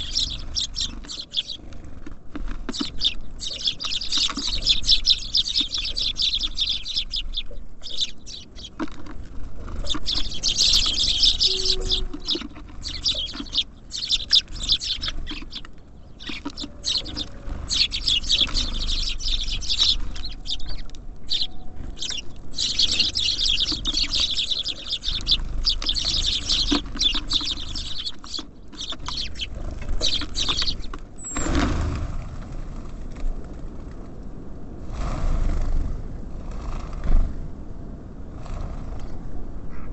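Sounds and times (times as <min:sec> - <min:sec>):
small birds chirping: 0:00.0 - 0:33.3.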